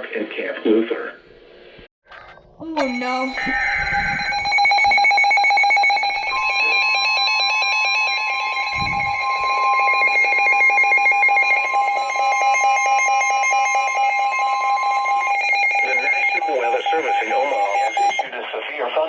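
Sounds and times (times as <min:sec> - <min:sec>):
fast electronic beeping: 0:02.6 - 0:12.3, 0:15.6 - 0:18.3
long steady alarm tone: 0:02.6 - 0:18.3.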